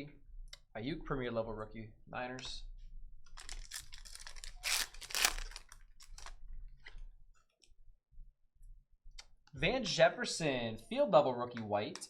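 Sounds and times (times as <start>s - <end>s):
cards rustling and clicking: 3.3s - 7.1s.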